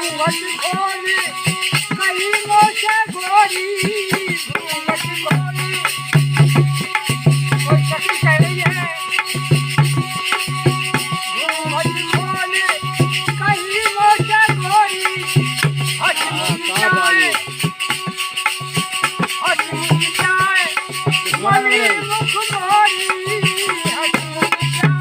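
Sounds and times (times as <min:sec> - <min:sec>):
person singing: 0:00.0 - 0:06.0, 0:11.4 - 0:17.6, 0:19.4 - 0:25.0
shaken rattle percussion: 0:00.0 - 0:25.0.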